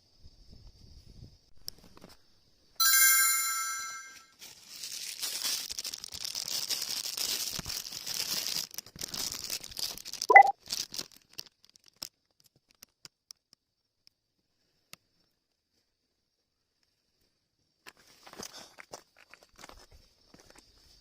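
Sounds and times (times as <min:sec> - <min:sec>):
crinkling plastic rustle: 0:04.4 - 0:13.0.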